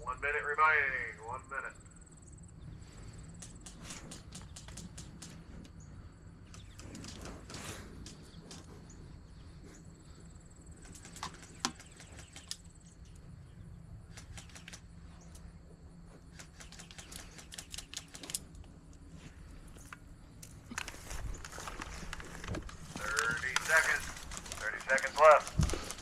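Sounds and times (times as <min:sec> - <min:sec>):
steady low hum: 0:00.0 - 0:26.0
faint rustling: 0:19.0 - 0:26.0.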